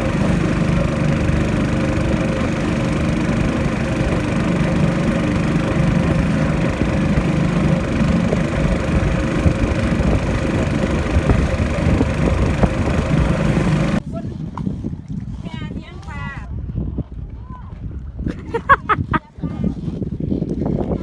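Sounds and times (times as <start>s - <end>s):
boat engine drone: 0.0s - 14.0s.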